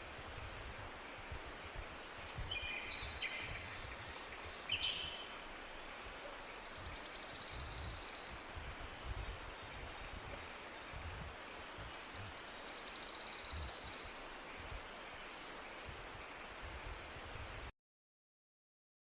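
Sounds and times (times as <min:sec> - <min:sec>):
birds chirping: 0:02.2 - 0:15.9.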